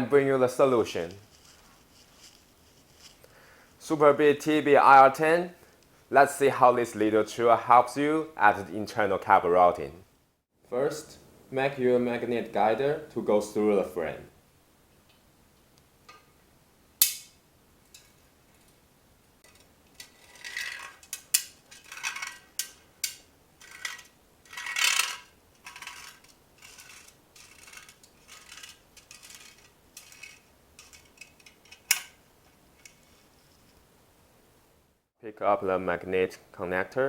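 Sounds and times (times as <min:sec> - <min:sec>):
metallic clicks and scraping rattles: 0:19.4 - 0:32.2, 0:32.8 - 0:33.8.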